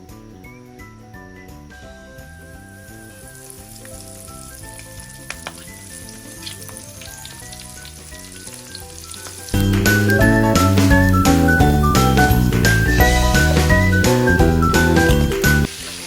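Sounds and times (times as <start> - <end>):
background music: 0.0 - 16.0
prawns sizzling in hot oil: 2.2 - 11.6, 12.6 - 16.0.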